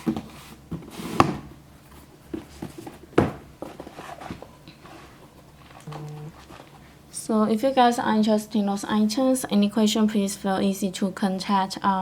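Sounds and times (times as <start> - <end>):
cardboard rustling: 0.0 - 6.9.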